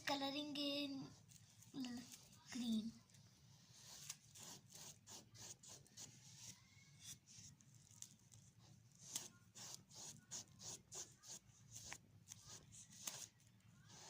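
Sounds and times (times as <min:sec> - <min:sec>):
paintbrush strokes on canvas: 0:09.0 - 0:14.0.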